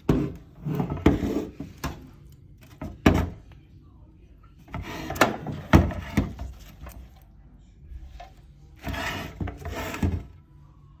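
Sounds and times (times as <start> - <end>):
rubbing and scraping: 0.0 - 3.4, 8.1 - 10.3.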